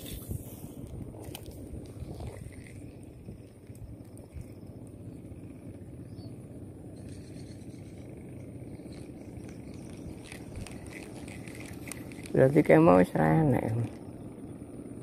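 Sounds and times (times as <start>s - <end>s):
steady low rumble: 0.0s - 15.0s
faint ticks: 2.7s - 5.0s.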